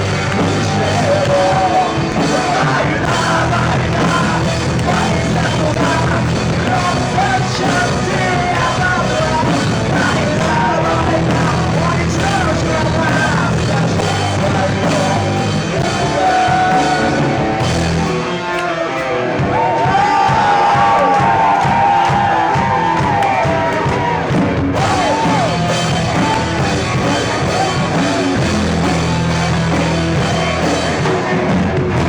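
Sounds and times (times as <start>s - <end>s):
live rock band playing: 0.0s - 32.0s.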